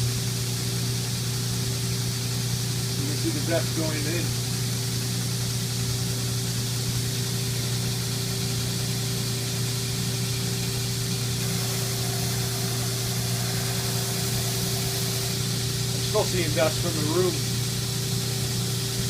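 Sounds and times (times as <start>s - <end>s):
motor hum: 0.0s - 19.0s
blower rushing air: 2.9s - 4.6s, 10.5s - 19.0s.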